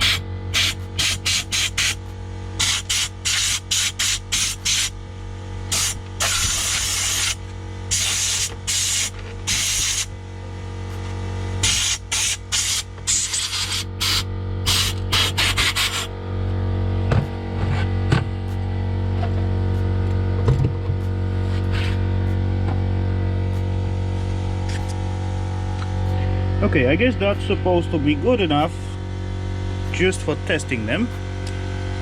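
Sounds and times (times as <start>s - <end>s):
steady low hum: 0.0s - 32.0s
compressed air hissing puffs: 5.7s - 10.1s, 11.6s - 16.1s.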